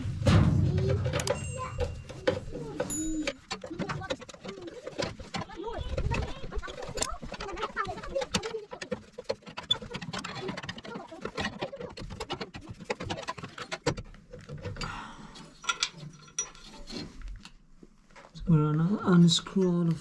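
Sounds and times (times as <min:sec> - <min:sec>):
metal parts clicking and rattling: 0:15.6 - 0:17.0.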